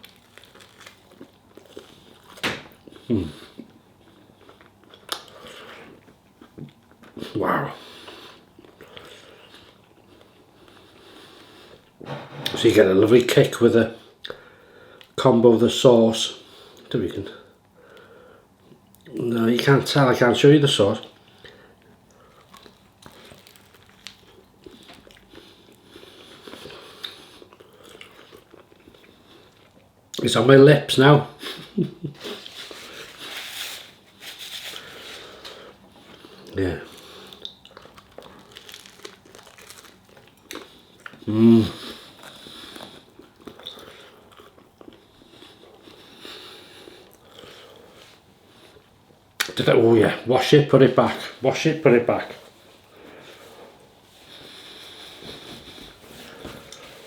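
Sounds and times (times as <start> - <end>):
person chewing food: 0.0 - 7.2, 8.0 - 12.0, 21.2 - 29.9, 34.8 - 49.5, 52.6 - 57.0.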